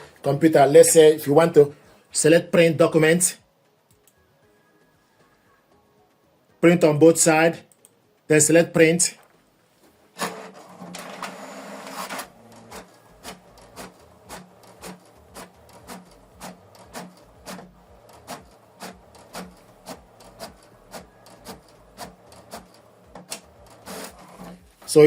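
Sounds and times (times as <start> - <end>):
printer paper feed whirring: 10.2 - 24.7.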